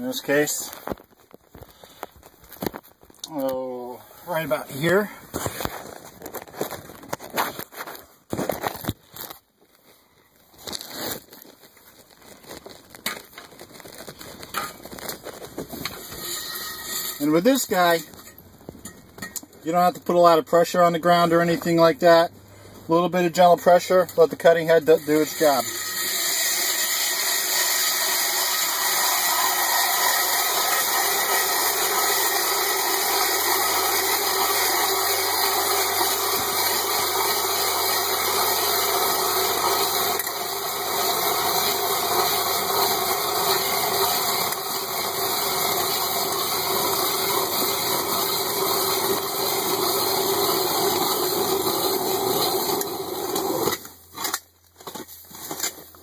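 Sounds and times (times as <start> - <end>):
hand auger grinding through ice: 10.6 - 18.4, 22.9 - 55.9.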